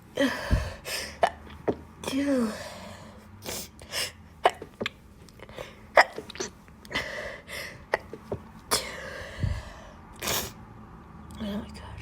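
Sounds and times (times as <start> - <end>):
breathy intakes: 0.2 - 4.3, 5.4 - 10.3
stifled sneezes: 5.5 - 9.1.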